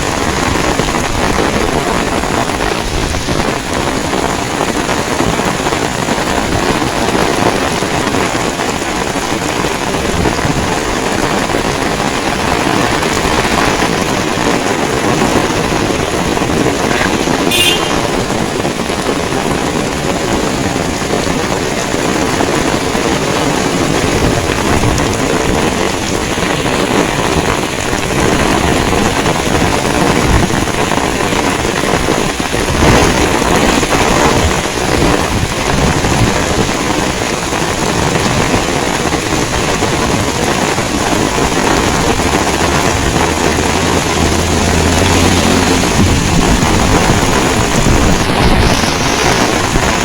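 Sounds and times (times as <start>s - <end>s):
heavy rain pouring: 0.0s - 50.0s
wind buffeting microphone: 0.0s - 50.0s
low engine hum: 40.8s - 50.0s.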